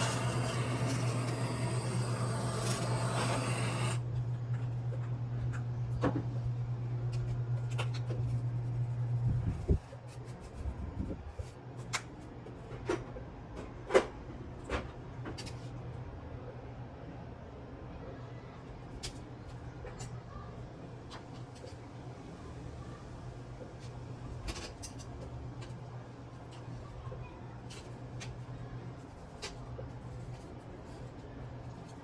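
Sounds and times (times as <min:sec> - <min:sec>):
low steady hum: 0:00.0 - 0:11.5.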